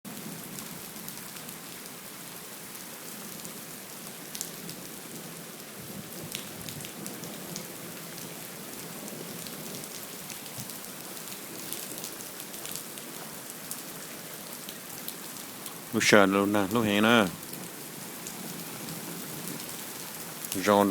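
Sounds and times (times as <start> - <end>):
heavy rain falling: 0.1 - 20.9
raindrops ticking: 19.5 - 20.9.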